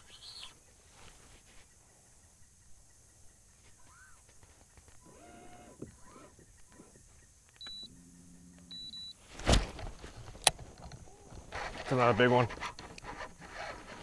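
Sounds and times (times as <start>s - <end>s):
small electric motor whirring: 5.0s - 7.0s
short high beeps: 7.6s - 7.9s, 8.7s - 9.2s.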